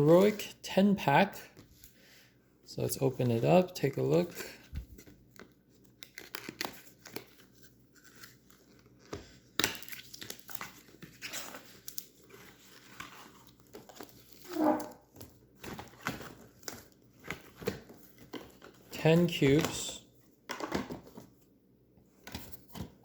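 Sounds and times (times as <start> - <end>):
packaging torn and crinkled: 5.8 - 9.0, 9.6 - 14.5.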